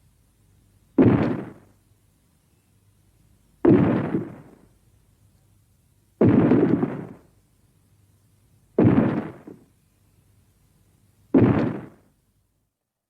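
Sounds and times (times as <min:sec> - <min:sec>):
heavy booms: 0:01.0 - 0:01.8, 0:03.6 - 0:04.7, 0:06.2 - 0:07.3, 0:08.8 - 0:09.7, 0:11.3 - 0:12.1.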